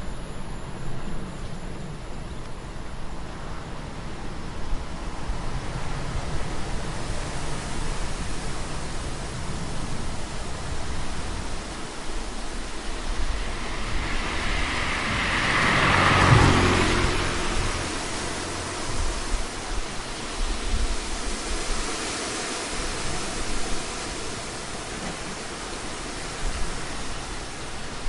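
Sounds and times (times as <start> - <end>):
road traffic noise: 0.0 - 28.0
vehicle passing close by: 12.5 - 21.3.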